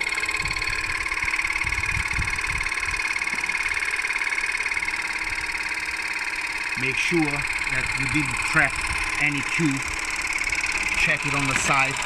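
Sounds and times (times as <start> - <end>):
electric air compressor buzzing: 0.0 - 12.0.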